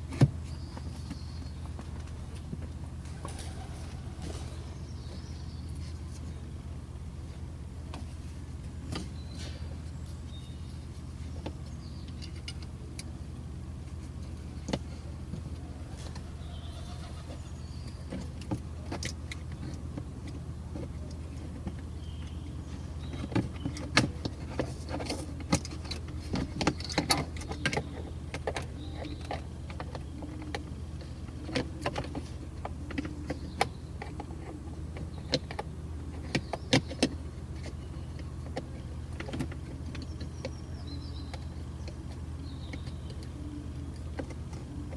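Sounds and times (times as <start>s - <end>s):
steady low hum: 0.0s - 44.9s.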